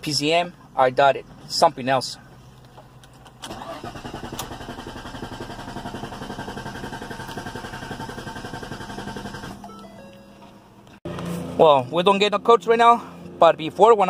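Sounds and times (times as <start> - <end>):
starter cranking engine: 3.2 - 9.6.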